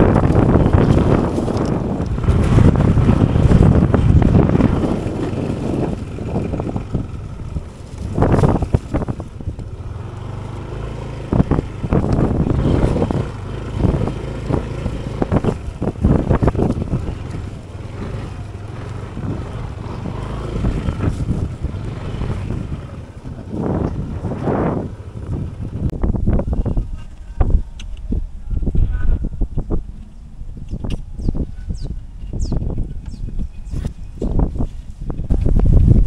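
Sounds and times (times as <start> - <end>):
scooter engine running: 0.0 - 28.3.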